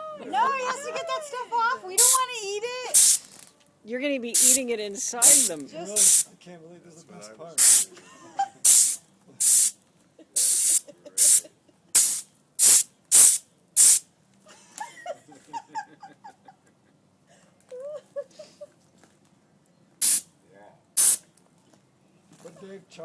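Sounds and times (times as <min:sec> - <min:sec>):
air blow gun hissing bursts: 0:02.0 - 0:02.2, 0:03.0 - 0:03.4, 0:04.4 - 0:04.6, 0:05.2 - 0:06.3, 0:07.6 - 0:07.9, 0:08.7 - 0:09.7, 0:10.4 - 0:11.4, 0:12.0 - 0:14.0, 0:20.0 - 0:20.2, 0:21.0 - 0:21.2.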